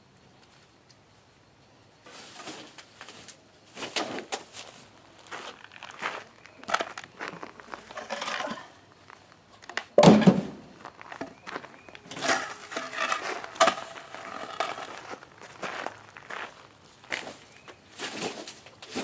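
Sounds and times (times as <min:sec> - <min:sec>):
wooden boards knocking and scraping: 0:09.7 - 0:10.6
loud thump: 0:10.0 - 0:10.6.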